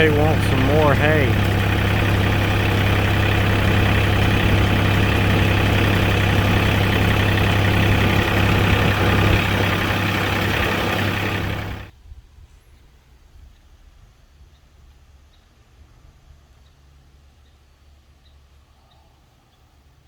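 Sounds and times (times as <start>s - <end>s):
engine idling: 0.0s - 11.9s.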